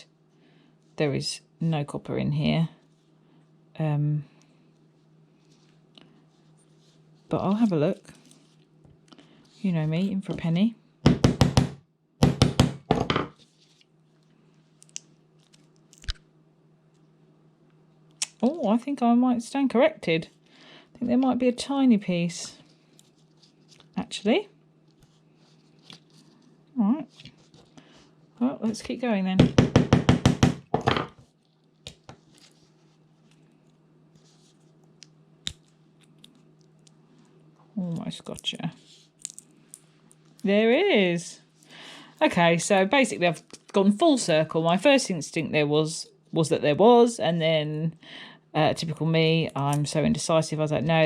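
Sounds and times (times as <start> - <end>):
faint low hum: 0.0 - 51.0
sharp knocks on plastic: 11.1 - 13.3, 29.4 - 31.1.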